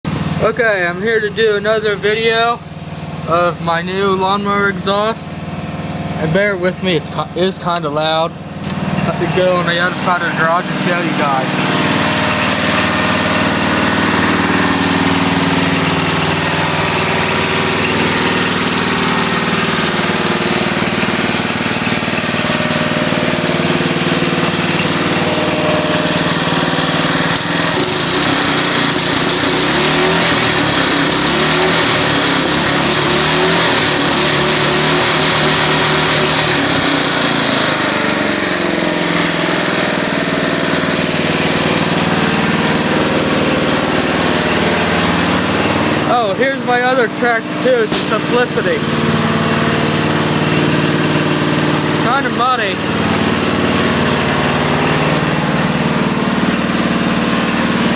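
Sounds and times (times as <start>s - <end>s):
riding lawnmower engine running: 0.0s - 57.9s.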